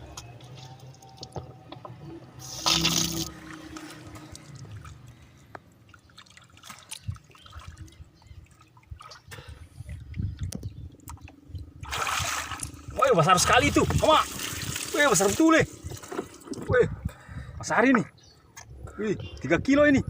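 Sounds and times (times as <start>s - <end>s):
rush of splashing water: 11.8s - 16.5s.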